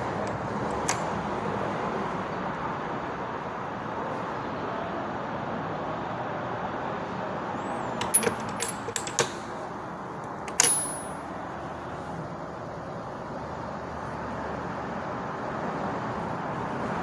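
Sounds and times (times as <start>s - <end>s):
metal hand tools clinking: 8.0s - 9.5s, 10.2s - 11.3s
sharp ringing metal clank: 10.5s - 11.3s.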